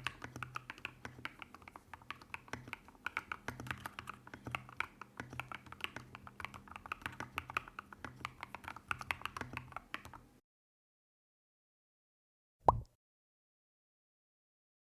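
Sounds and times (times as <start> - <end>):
mechanical keyboard typing: 0.0 - 10.4.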